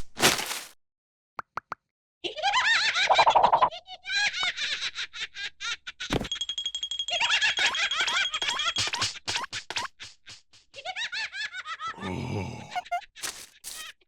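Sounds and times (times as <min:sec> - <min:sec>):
cartoon characters chattering gibberish: 0:12.6 - 0:13.9.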